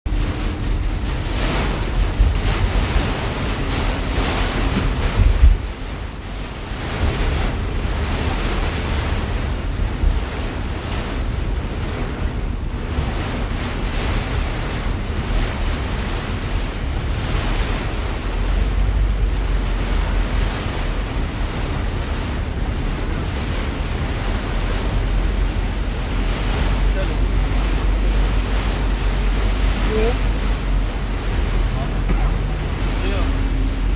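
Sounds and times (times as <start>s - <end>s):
heavy rain pouring: 0.0s - 33.9s
wind buffeting microphone: 0.0s - 33.9s.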